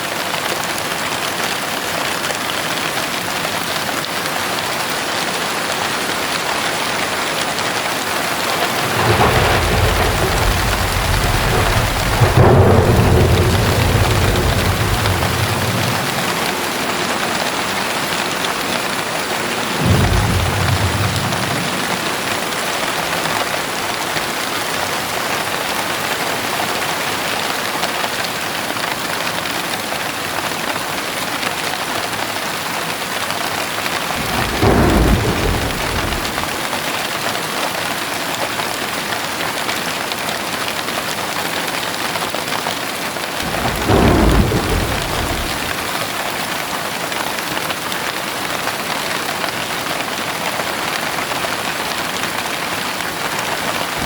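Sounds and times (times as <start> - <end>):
heavy rain pouring: 0.0 - 54.0
low rumbles of thunder: 7.8 - 23.6, 34.0 - 36.7, 43.4 - 46.4.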